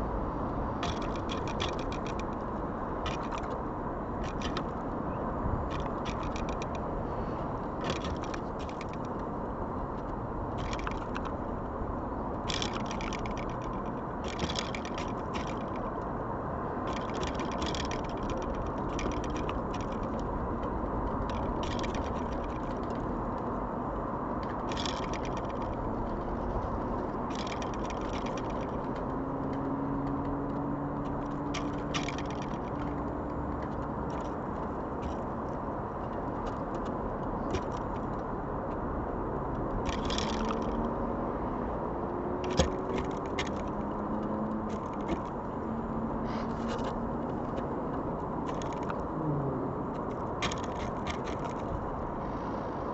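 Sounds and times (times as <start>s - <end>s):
steady background rumble: 0.0s - 52.9s
sharp taps and scrapes: 0.8s - 3.6s, 4.2s - 5.0s, 5.7s - 6.9s, 7.8s - 9.3s, 42.0s - 45.6s, 46.3s - 49.1s, 49.8s - 52.5s.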